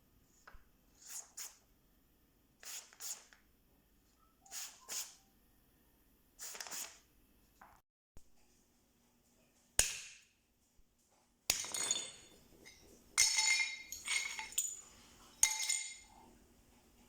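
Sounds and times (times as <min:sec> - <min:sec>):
hard objects clinking: 0:11.5 - 0:16.3.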